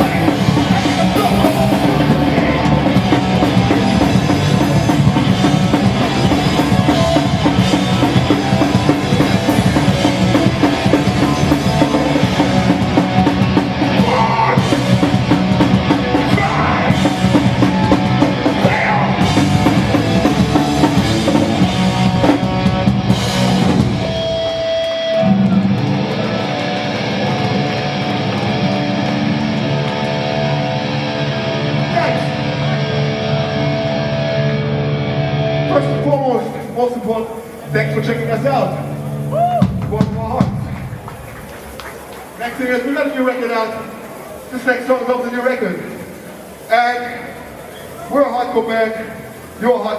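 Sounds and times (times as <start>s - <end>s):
bass guitar: 0.0s - 36.7s, 37.6s - 41.4s
distorted electric guitars: 0.0s - 49.9s
drums: 0.0s - 49.9s.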